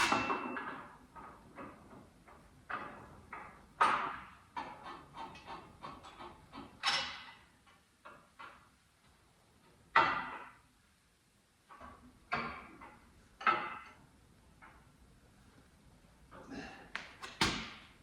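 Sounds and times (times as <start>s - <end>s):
metal clanks of tools: 0.0s - 1.3s.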